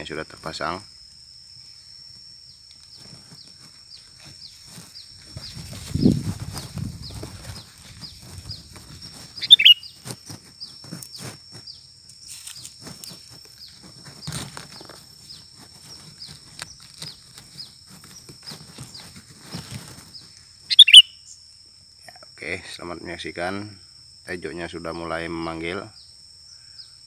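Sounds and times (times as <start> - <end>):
bird call of quick falling notes: 9.4 - 9.8, 20.7 - 21.0.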